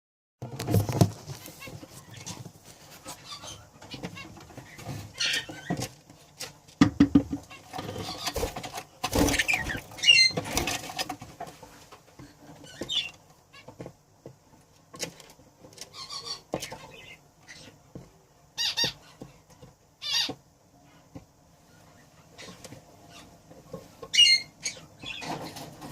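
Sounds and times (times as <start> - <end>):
budgerigars chirping: 3.0 - 5.9, 7.5 - 8.5, 9.2 - 10.7, 12.6 - 13.7, 15.8 - 17.8, 18.6 - 19.2, 20.0 - 20.4, 24.1 - 25.6
knocks: 6.8 - 7.5.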